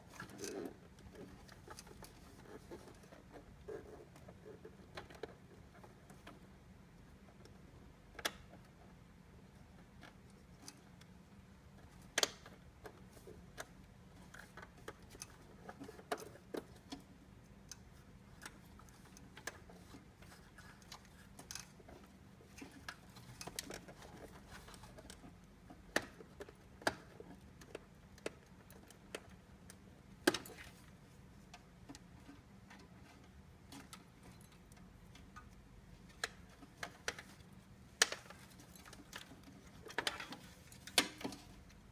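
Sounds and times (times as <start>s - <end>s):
small hard parts clicking: 9.7s - 41.9s.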